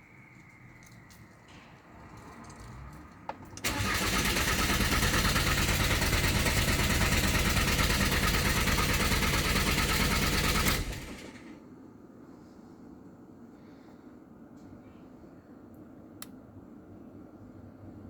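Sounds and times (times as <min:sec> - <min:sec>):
starter motor cranking engine: 0:03.4 - 0:11.6.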